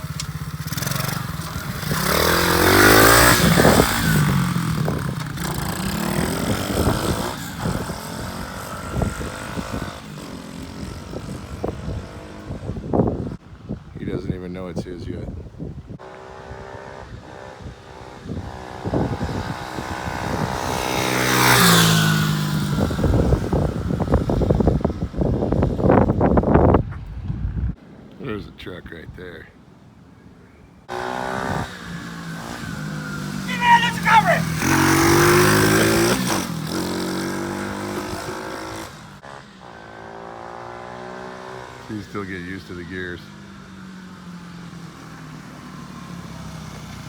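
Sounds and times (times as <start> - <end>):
dirt bike engine passing by: 0.0 - 13.2, 16.0 - 24.8, 30.9 - 41.9
wind buffeting microphone: 1.5 - 27.8.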